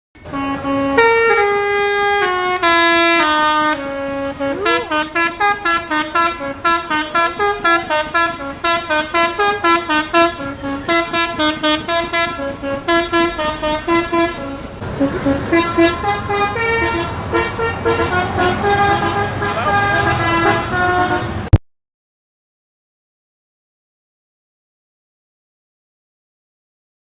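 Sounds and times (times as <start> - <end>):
musical bus horn playing tune: 0.2 - 21.6.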